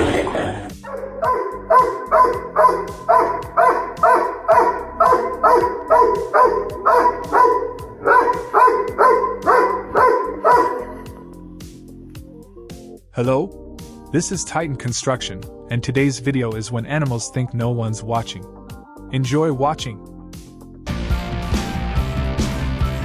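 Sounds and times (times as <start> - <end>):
dog barking: 0.8 - 11.2
background music with a beat: 0.8 - 14.2, 20.1 - 23.0.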